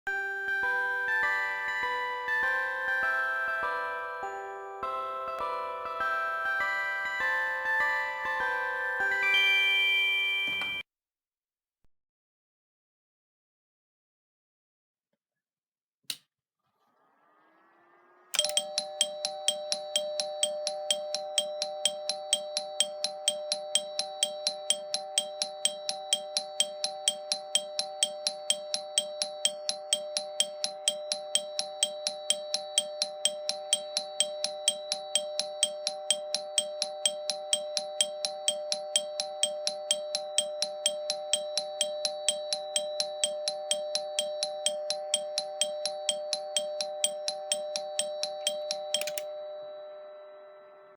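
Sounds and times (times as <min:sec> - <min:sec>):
railway warning bell ringing: 0:18.4 - 0:50.9.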